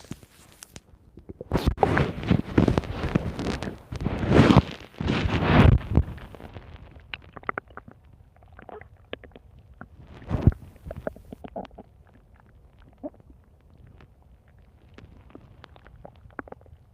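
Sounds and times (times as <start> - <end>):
stomach growling: 1.1 - 16.9.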